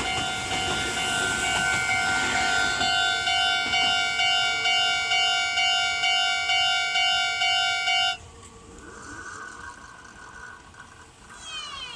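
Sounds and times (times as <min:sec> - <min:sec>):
level-crossing warning bell clanging: 0:00.0 - 0:08.2.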